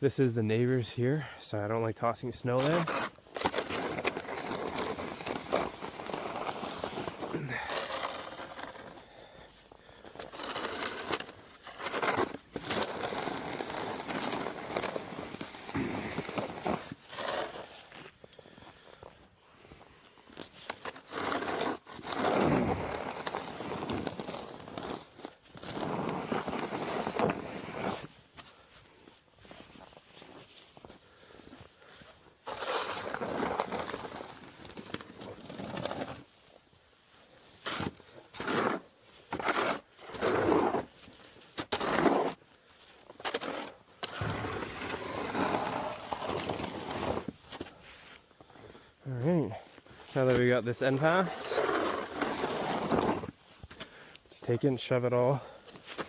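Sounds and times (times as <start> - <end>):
snow shovel scraping pavement: 2.0 - 18.6, 19.5 - 36.6, 37.3 - 56.0
footsteps crunching snow: 2.3 - 9.3, 10.3 - 36.4, 37.0 - 48.2.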